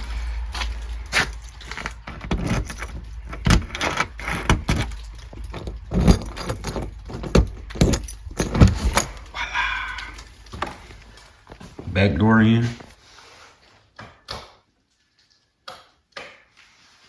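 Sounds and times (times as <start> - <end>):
keys jangling: 0.0 - 11.9.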